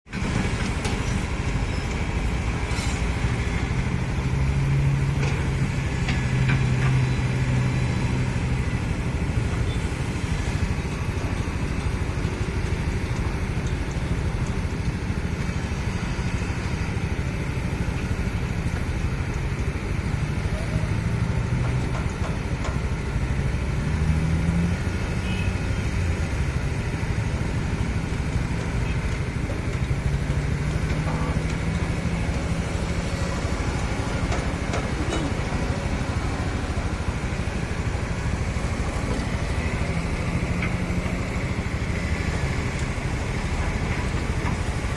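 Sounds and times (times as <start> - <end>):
excavator diesel engine running: 0.1 - 44.9.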